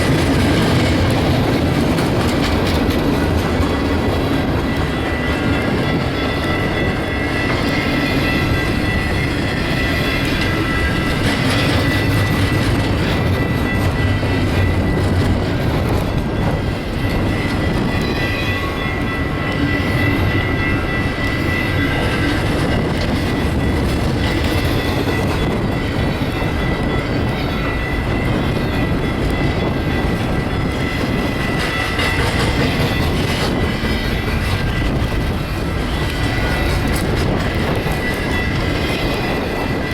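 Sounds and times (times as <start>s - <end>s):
wheels clicking over rail joints: 0.0s - 19.6s
freight train wheels rumbling: 0.0s - 39.9s
high wheel squeal: 16.5s - 39.9s.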